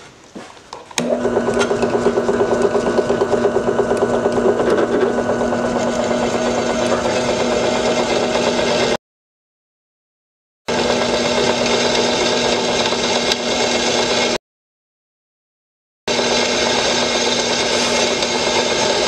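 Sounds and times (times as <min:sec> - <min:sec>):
electric drill boring steel: 0:01.0 - 0:09.0, 0:10.7 - 0:14.4, 0:16.1 - 0:19.0.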